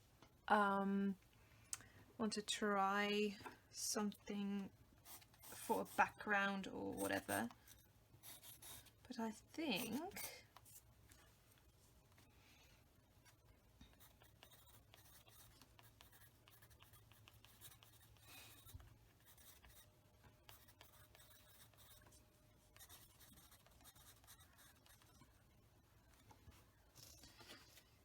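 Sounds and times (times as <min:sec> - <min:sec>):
low room hum: 0:00.0 - 0:28.0
scratchy strokes on paper: 0:05.0 - 0:09.0, 0:09.6 - 0:10.9, 0:14.0 - 0:25.3.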